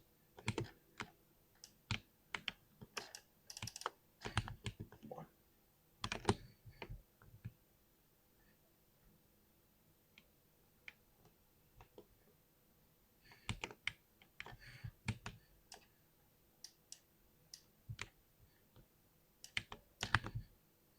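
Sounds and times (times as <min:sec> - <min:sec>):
computer keyboard typing: 0:00.4 - 0:04.8, 0:13.4 - 0:14.0, 0:19.4 - 0:20.4.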